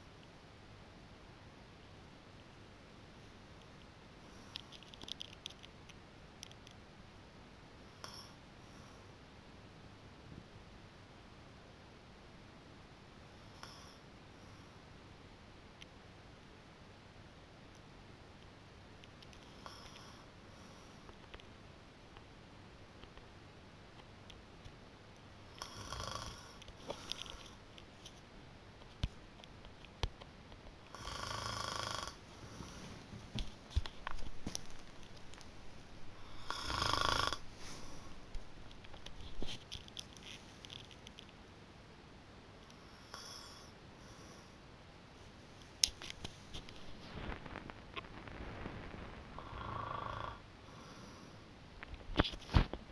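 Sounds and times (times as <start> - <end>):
person snoring: 25.6 - 27.4, 30.9 - 32.8, 36.2 - 38.0, 49.4 - 51.4
breathy breathing: 50.6 - 51.5.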